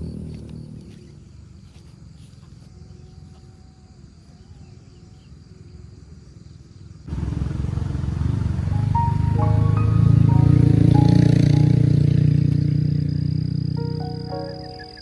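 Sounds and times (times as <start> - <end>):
background music: 8.3 - 12.6, 13.8 - 15.0.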